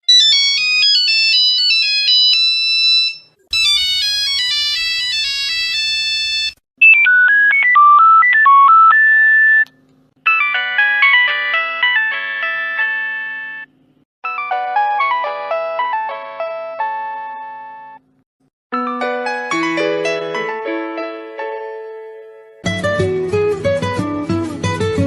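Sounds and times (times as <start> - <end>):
phone ringtone melodies: 0.1 - 9.6, 10.2 - 18.0, 18.8 - 21.3.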